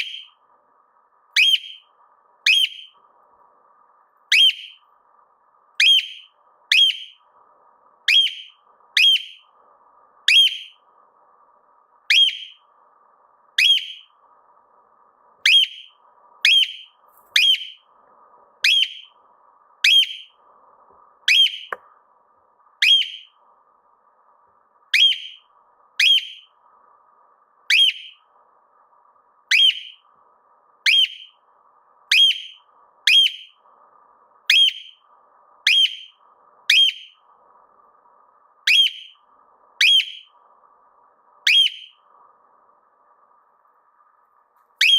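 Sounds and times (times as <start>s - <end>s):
cockatiel whistled calls: 0.0s - 0.3s, 1.4s - 1.8s, 2.4s - 3.0s, 4.3s - 4.8s, 5.8s - 7.2s, 8.1s - 9.4s, 10.3s - 10.8s, 12.1s - 12.6s, 13.6s - 14.1s, 15.4s - 17.8s, 18.6s - 19.1s, 19.8s - 20.3s, 21.3s - 21.8s, 22.8s - 23.3s, 24.9s - 25.4s, 26.0s - 26.5s, 27.7s - 28.2s, 29.5s - 30.0s, 30.8s - 31.4s, 32.1s - 33.5s, 34.5s - 35.0s, 35.7s - 36.1s, 36.7s - 37.2s, 38.7s - 39.2s, 39.8s - 40.3s, 41.4s - 42.0s.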